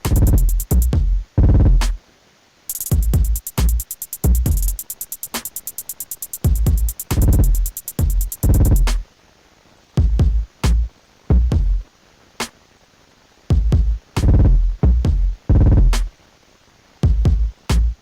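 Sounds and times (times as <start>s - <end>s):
hi-hat ticks: 0.0s - 1.0s, 2.7s - 9.1s.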